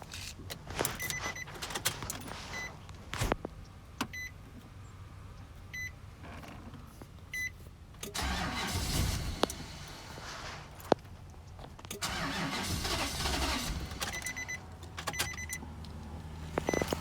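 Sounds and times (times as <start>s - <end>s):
engine cranked by starter: 8.0s - 11.0s, 11.9s - 17.0s.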